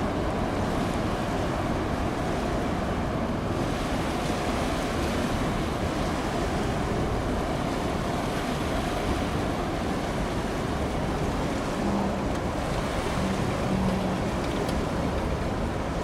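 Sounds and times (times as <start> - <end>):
water washing against shore: 0.0 - 16.0.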